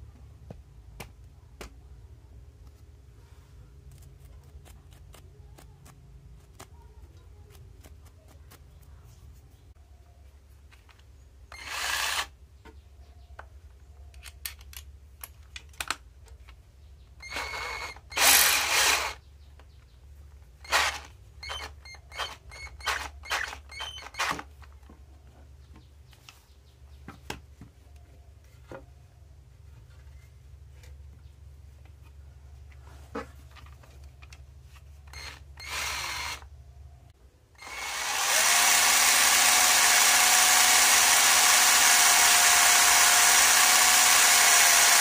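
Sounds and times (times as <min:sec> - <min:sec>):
cordless drill motor whirring: 0:11.5 - 0:12.3, 0:17.2 - 0:19.2, 0:20.6 - 0:24.4, 0:35.1 - 0:36.5, 0:37.6 - 0:45.0.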